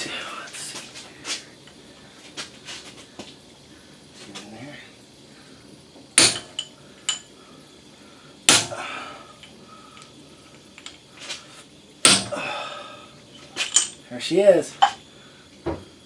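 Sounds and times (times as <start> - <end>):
hammer striking steel chisel: 6.2 - 7.2, 12.0 - 12.3.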